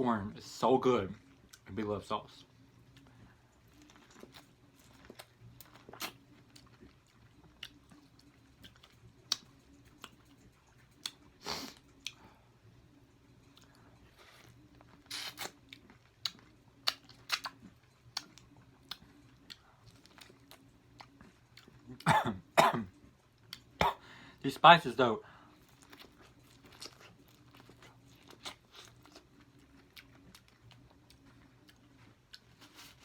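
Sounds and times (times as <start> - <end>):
faint low hum: 0.0 - 33.0
person biting and chewing: 3.7 - 12.2, 13.4 - 21.8, 25.7 - 33.0
wet mouth clicks and smacks: 16.2 - 19.6.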